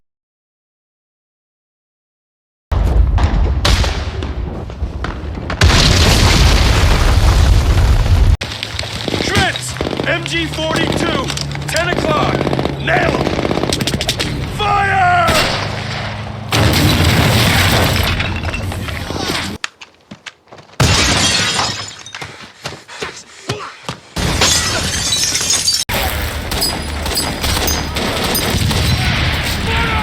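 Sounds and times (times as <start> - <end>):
sharp cracks: 5.0 - 21.0
impacts with shattering: 5.5 - 19.6, 20.8 - 22.4, 24.2 - 30.0
gunfire: 8.9 - 14.6, 15.2 - 18.2, 25.9 - 30.0.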